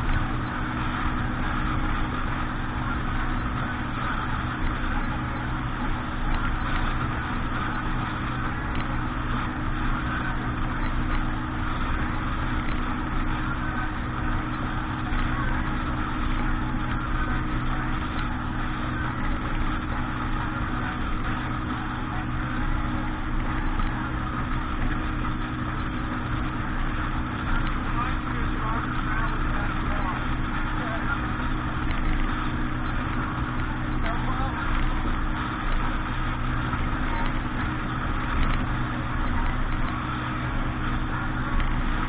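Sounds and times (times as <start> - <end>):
motorboat engine droning: 0.0 - 42.0
rush of wind and water: 0.0 - 42.0.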